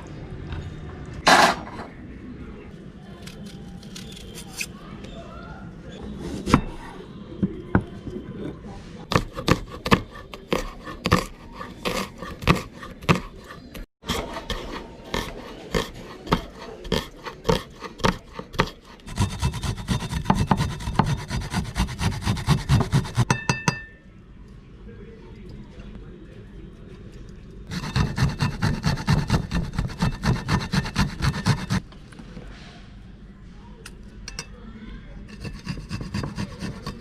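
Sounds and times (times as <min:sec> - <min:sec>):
utensil scraping in a pan: 0:08.4 - 0:23.3, 0:27.6 - 0:31.8, 0:35.3 - 0:37.0.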